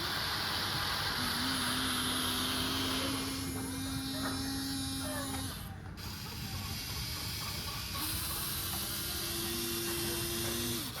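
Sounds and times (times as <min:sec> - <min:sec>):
steady hiss: 0:00.0 - 0:03.8
small electric motor whining: 0:00.0 - 0:11.0.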